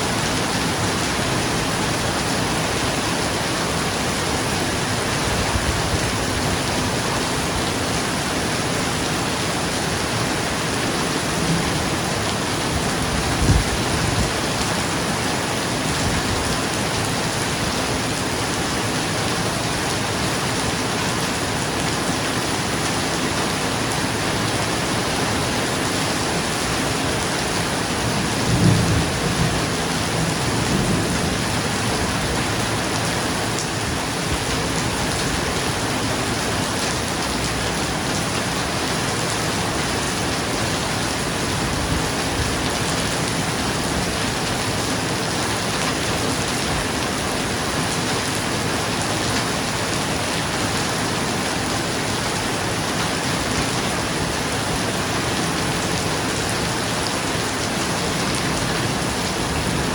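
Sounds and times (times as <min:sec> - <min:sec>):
rain on a roof: 0:00.0 - 0:59.9
low thunder rumbles: 0:28.1 - 0:32.6.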